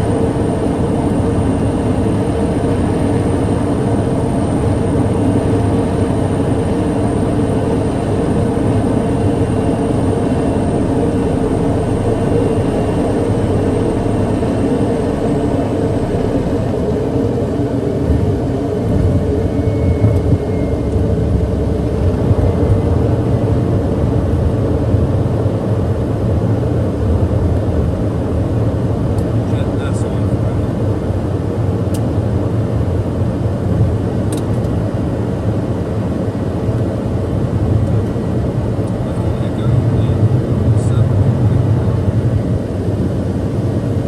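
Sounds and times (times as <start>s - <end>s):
thin high whine: 0.0s - 23.5s
turboprop drone inside aircraft: 0.0s - 44.0s.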